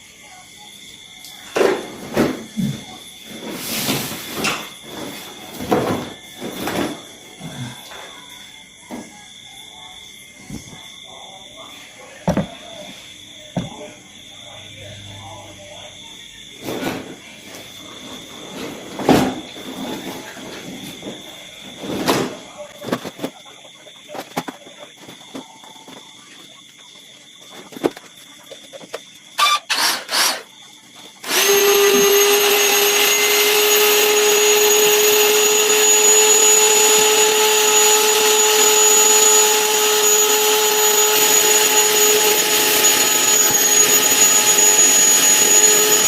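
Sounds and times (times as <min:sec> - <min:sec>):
electric air pump whining: 0:29.4 - 0:30.5, 0:31.1 - 0:46.0.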